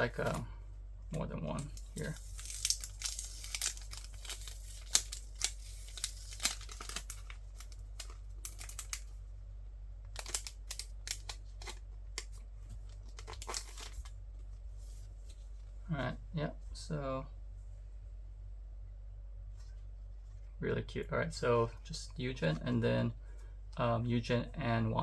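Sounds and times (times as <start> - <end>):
packaging crinkling and rustling: 1.5 - 9.2, 10.1 - 15.6.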